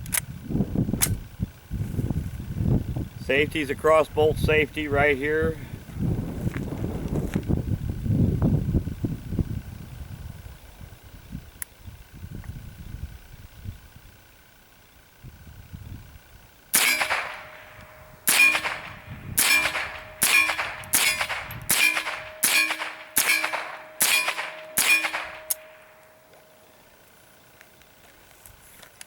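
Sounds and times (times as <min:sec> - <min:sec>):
rifle shots: 0:16.7 - 0:26.3
steel targets ringing: 0:16.8 - 0:26.6.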